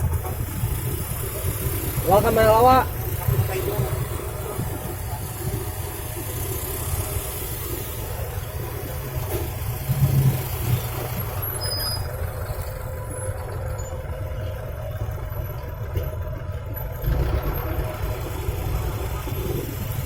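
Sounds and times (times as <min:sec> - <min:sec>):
heavy vehicle engines rumbling: 0:00.0 - 0:20.0.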